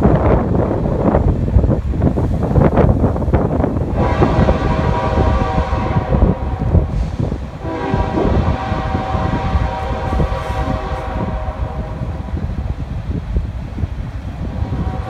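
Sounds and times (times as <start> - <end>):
low train rumble: 0.0 - 15.0
locomotive air horn blasts: 3.8 - 12.8, 14.4 - 15.0.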